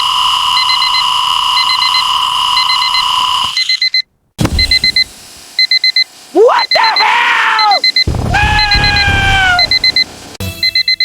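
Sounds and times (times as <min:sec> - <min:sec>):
alarm clock beeping: 0:00.0 - 0:11.0.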